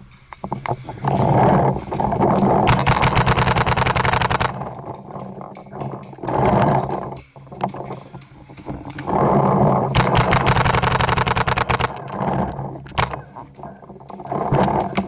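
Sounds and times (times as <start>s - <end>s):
rustling: 0.0s - 15.0s
scattered clicks: 0.3s - 15.0s
paintball marker rapid firing: 2.7s - 4.7s, 10.0s - 12.2s.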